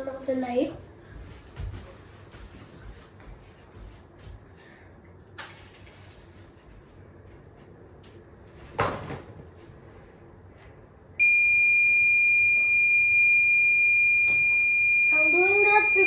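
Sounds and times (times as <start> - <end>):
doorbell buzzer high tone: 11.2 - 16.0.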